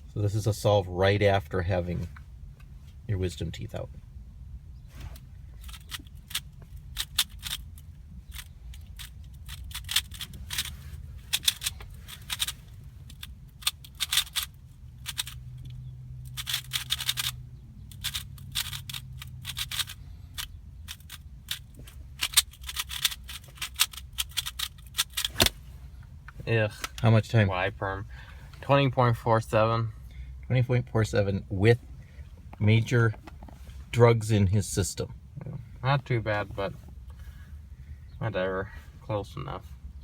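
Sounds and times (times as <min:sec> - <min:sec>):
puzzle cube layers clicking: 0:16.3 - 0:21.6.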